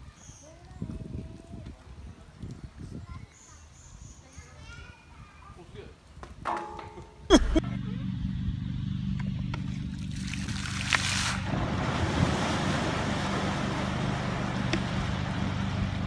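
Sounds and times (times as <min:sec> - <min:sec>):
wind and water rushing: 0:10.1 - 0:16.0.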